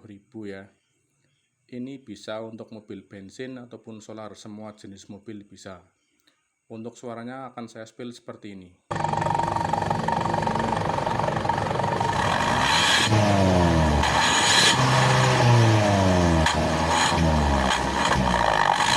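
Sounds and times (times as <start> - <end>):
engine revving with growling exhaust: 8.9 - 18.9.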